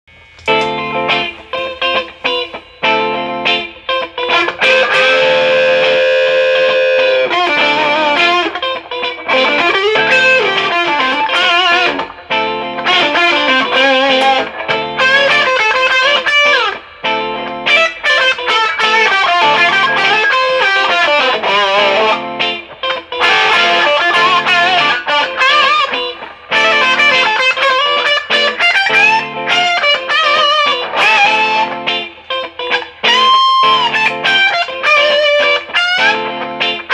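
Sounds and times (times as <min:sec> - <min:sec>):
overdriven electric guitar lead: 0:00.1 - 0:36.9.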